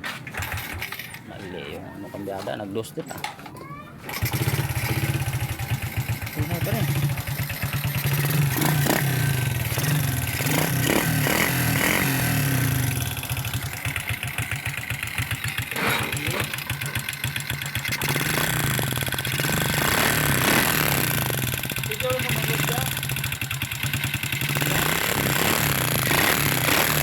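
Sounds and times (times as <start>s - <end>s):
motorcycle engine idling: 4.1s - 27.0s.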